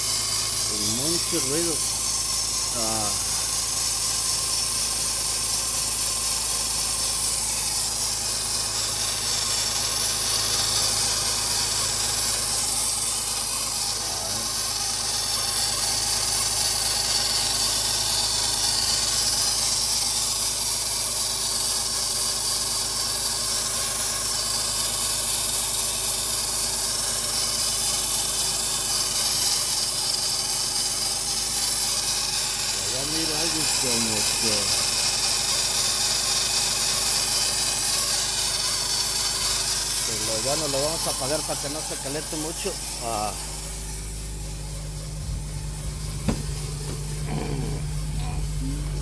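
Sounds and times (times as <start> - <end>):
car engine idling: 0.0 - 27.7, 28.6 - 49.0
high hiss with steady tones: 37.1 - 49.0.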